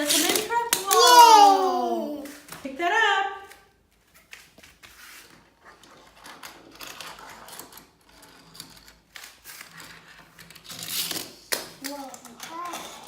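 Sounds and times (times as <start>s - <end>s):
plastic toy pieces rattling: 0.0s - 1.1s.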